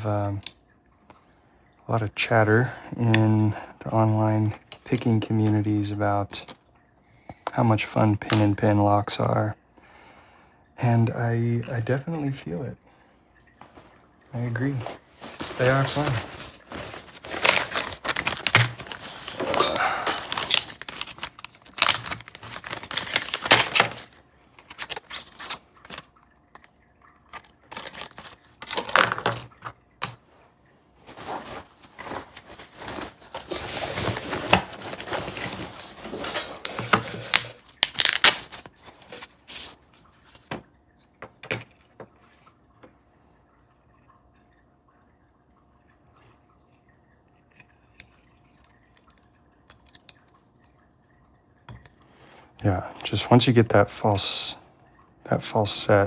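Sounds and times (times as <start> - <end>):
lock clicking and rattling: 15.9 - 26.0.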